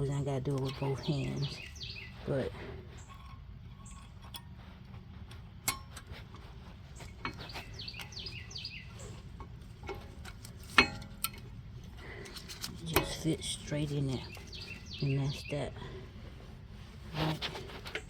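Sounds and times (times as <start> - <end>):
birds chirping: 0.1 - 4.1, 6.8 - 9.4, 12.0 - 16.1.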